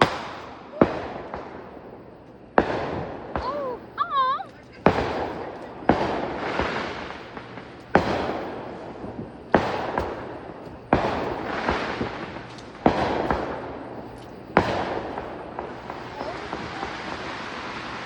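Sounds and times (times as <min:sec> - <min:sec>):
small firework pops: 0:00.0 - 0:01.6, 0:04.5 - 0:13.6, 0:14.2 - 0:17.3
firework bangs: 0:00.0 - 0:18.0
firework crackle: 0:00.0 - 0:18.0.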